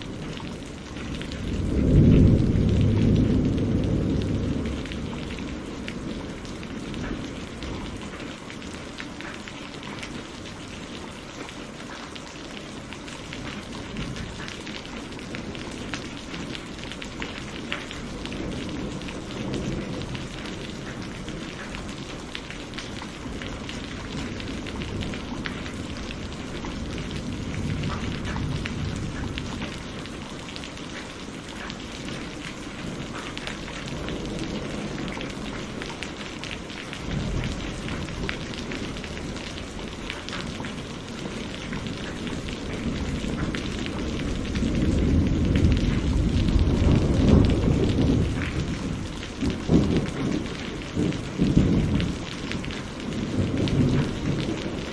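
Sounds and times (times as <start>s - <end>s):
thunder rolling: 0.0s - 8.2s, 23.0s - 30.4s, 32.1s - 54.9s
heavy rain: 0.0s - 54.9s.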